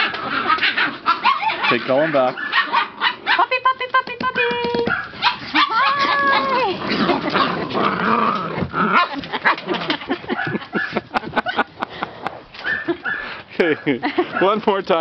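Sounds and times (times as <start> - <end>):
puppies squeaking and whining: 12.6 - 13.4.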